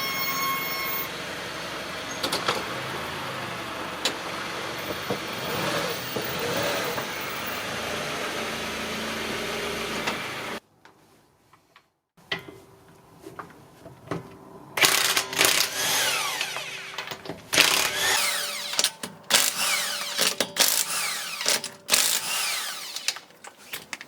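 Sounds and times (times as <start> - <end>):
high squeal: 0.0 - 1.1
clicks: 18.2 - 24.0.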